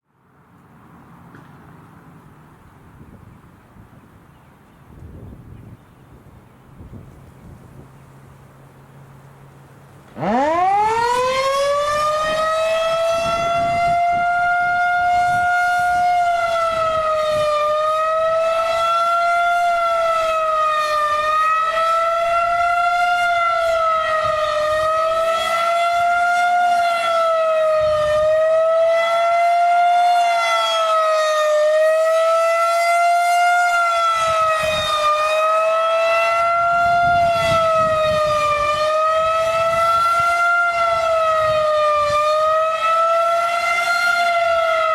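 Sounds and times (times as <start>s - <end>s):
warning siren wailing: 10.1s - 44.9s.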